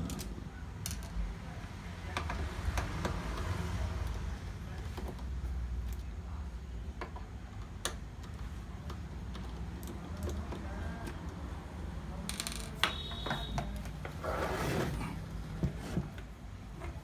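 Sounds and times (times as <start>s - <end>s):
scraping rustle: 14.1s - 16.1s.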